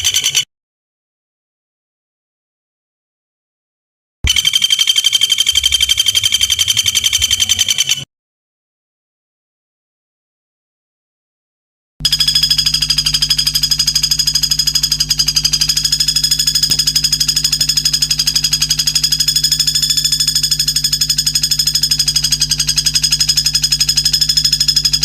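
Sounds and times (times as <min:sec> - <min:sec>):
high buzzing bird trill: 0:00.0 - 0:00.4, 0:04.3 - 0:08.0, 0:12.0 - 0:25.0.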